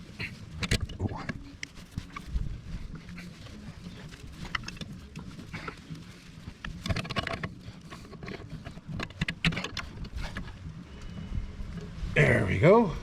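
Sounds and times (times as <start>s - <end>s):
metal tools clicking and knocking: 6.6s - 10.4s.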